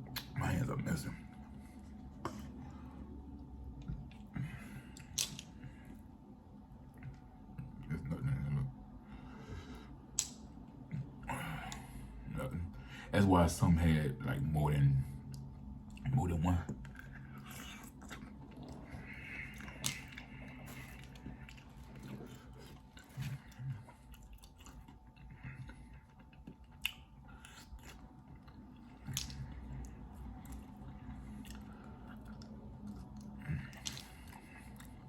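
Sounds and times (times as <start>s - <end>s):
chewing and biting food: 15.3s - 35.0s.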